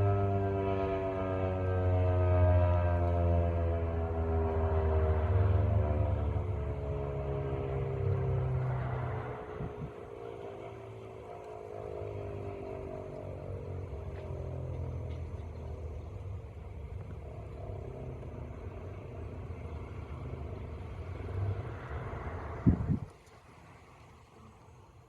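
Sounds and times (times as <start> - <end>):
siren winding down: 0.0 - 11.0
low traffic rumble: 0.0 - 25.0.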